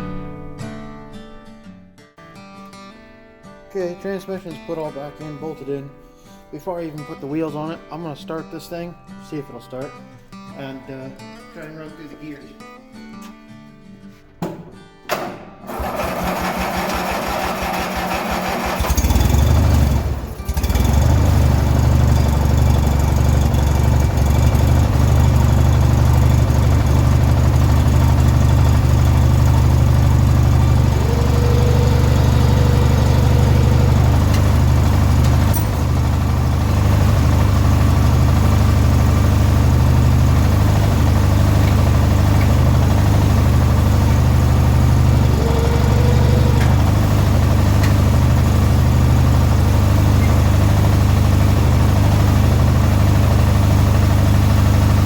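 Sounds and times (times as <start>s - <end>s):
riding mower engine idling: 15.2s - 55.0s.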